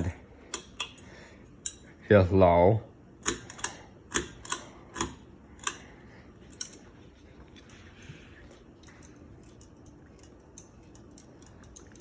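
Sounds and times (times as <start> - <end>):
ceiling fan running quietly: 0.0 - 12.0.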